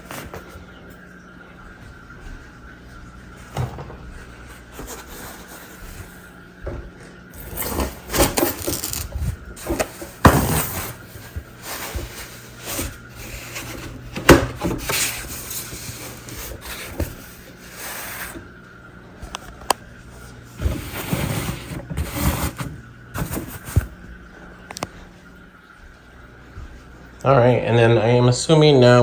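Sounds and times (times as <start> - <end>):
plastic and foam rubbing and rustling: 3.5 - 6.4, 7.4 - 18.6, 20.2 - 25.2.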